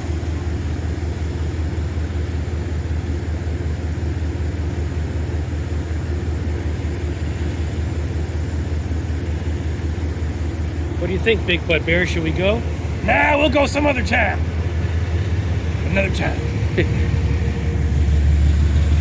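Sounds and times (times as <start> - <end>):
diesel locomotive engine rumbling: 0.0 - 19.0.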